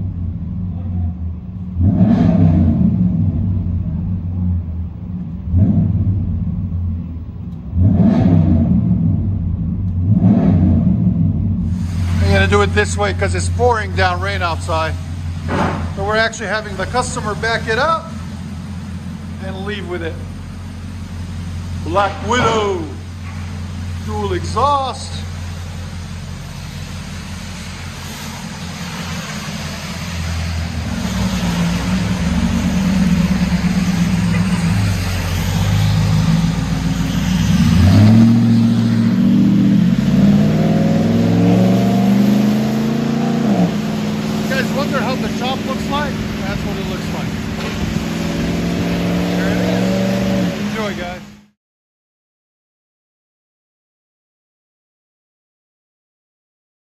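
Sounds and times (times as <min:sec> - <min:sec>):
engine rumble revving: 0:00.0 - 0:51.6
pouring rain hiss: 0:11.7 - 0:17.2, 0:25.2 - 0:39.4, 0:43.7 - 0:51.2.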